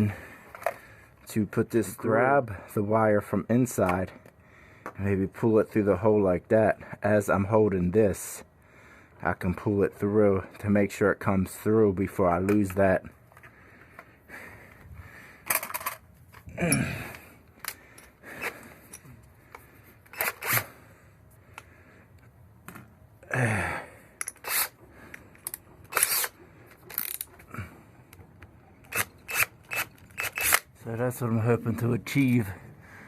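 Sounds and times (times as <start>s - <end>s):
handling clicks snaps and rustles: 12.4s - 14.1s, 17.1s - 20.6s, 24.2s - 27.5s.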